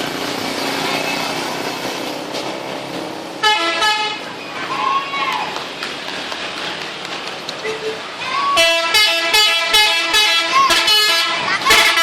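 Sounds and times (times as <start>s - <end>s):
road traffic: 0.0s - 12.0s
musical horn blast: 3.4s - 4.2s, 8.6s - 12.0s.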